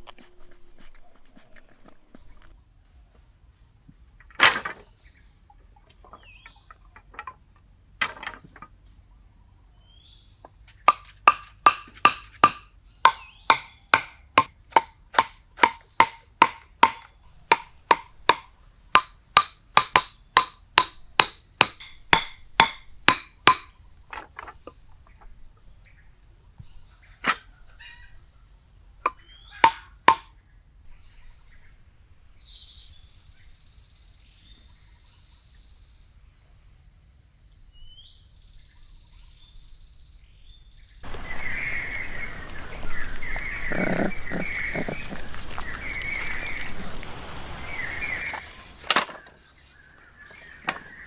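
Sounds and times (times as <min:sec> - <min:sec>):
sharp wooden knocks: 0:08.0 - 0:08.7, 0:10.8 - 0:25.3, 0:29.1 - 0:30.3, 0:48.3 - 0:49.4, 0:50.3 - 0:51.0.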